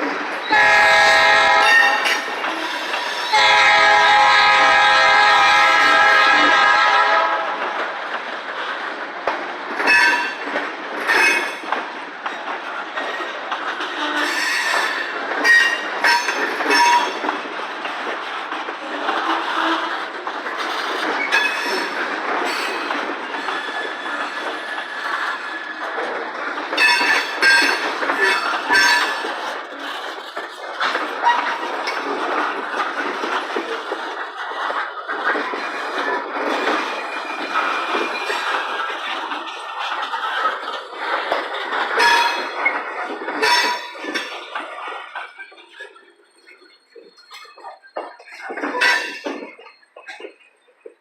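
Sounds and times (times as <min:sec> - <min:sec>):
train rolling past: 0:00.0 - 0:51.0
wheels clicking over rail joints: 0:00.0 - 0:51.0
diesel locomotive horn blast: 0:00.4 - 0:02.3, 0:03.3 - 0:07.6.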